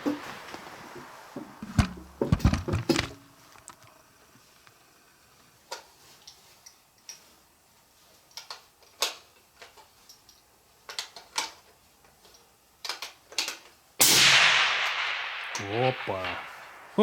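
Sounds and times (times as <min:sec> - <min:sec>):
rifle shot ringing out: 0:14.0 - 0:17.0.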